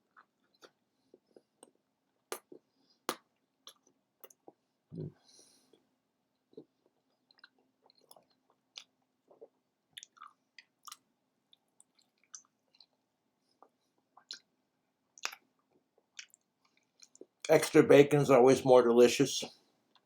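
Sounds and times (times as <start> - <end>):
person chewing food: 0.0 - 4.7, 6.4 - 17.5.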